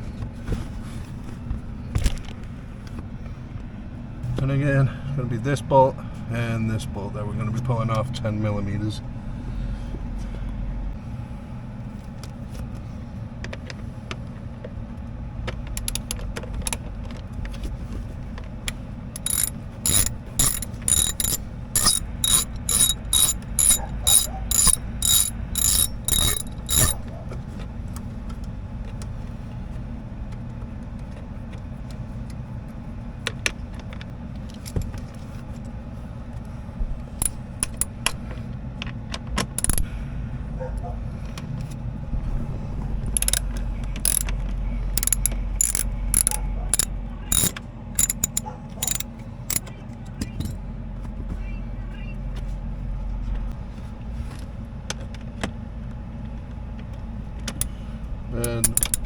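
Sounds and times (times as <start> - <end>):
ratchet wrench clicking: 15.8 - 16.2, 19.2 - 27.0, 37.2 - 38.0, 39.6 - 39.9, 43.2 - 43.5, 44.1 - 44.3, 45.0 - 49.7, 58.4 - 59.0
steady low hum: 18.2 - 27.3.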